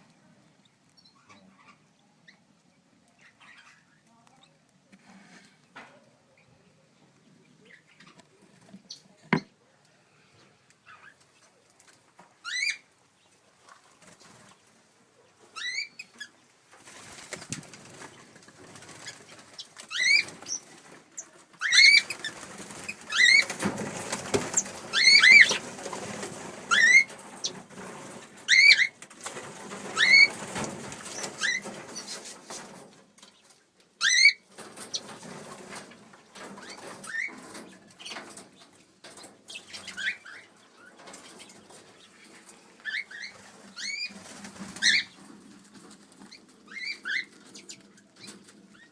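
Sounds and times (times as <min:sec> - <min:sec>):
birds rustling: 0:00.1 - 0:48.9
bird chatter: 0:18.0 - 0:32.5, 0:36.5 - 0:45.4.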